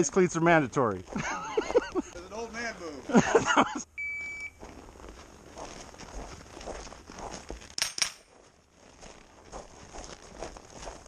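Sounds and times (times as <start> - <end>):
sharp metallic clink: 7.8 - 8.3.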